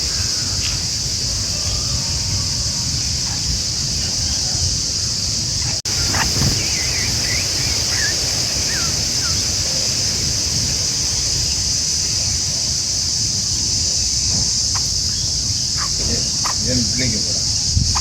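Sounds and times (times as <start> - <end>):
insect chorus: 0.0 - 18.0
low wind rumble: 0.0 - 18.0
faint bird chirps: 5.6 - 10.0.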